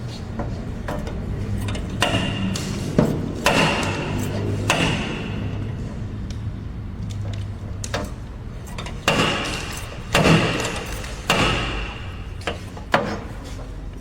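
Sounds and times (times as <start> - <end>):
hammer striking sheet metal: 0.9 - 6.0, 8.8 - 13.3.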